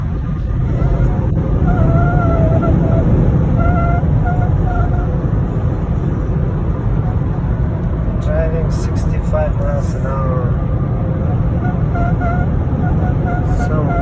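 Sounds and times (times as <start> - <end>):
road and wind rumble in car: 0.0 - 14.0
thin wind whistle: 0.3 - 5.6.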